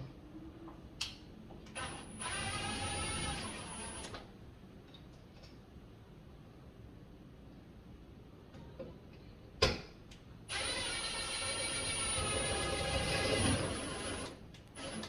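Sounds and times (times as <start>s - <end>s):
cordless drill whining: 1.8s - 4.2s, 10.5s - 15.0s.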